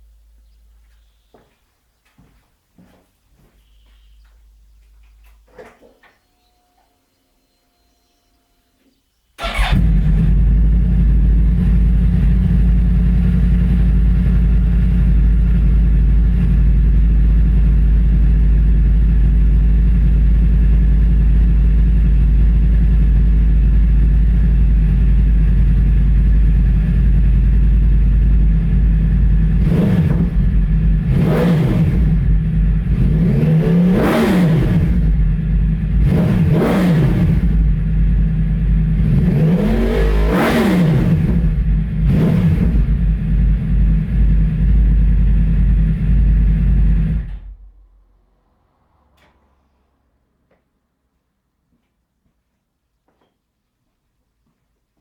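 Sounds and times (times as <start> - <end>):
motorcycle engine idling and revving: 9.4 - 47.8.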